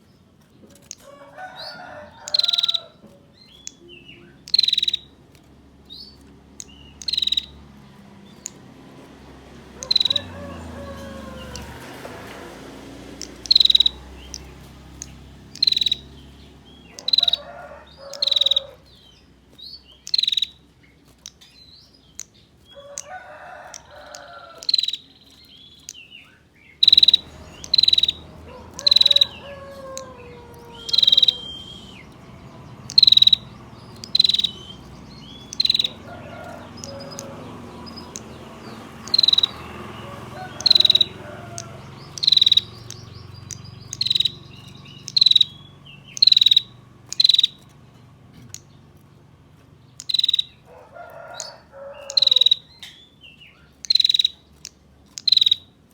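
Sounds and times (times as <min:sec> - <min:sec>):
fainter lower bird calls: 0:00.8 - 0:05.2, 0:05.9 - 0:07.6, 0:09.8 - 0:12.0, 0:13.2 - 0:38.3, 0:39.0 - 0:47.8, 0:49.9 - 0:55.8
bird sharp high tir notes: 0:30.8 - 0:32.1.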